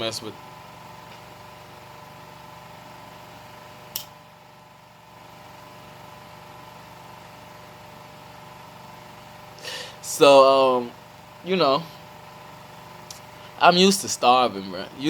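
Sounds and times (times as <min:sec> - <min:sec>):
low mechanical hum: 0:00.0 - 0:15.0
short sharp click: 0:03.9 - 0:04.1.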